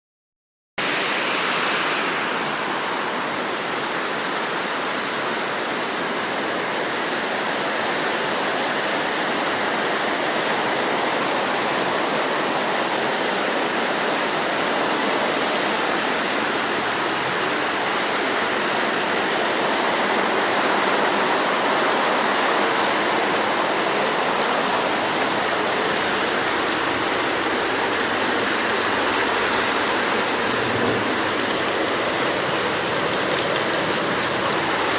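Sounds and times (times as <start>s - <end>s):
water pouring into a ditch: 22.3s - 34.9s.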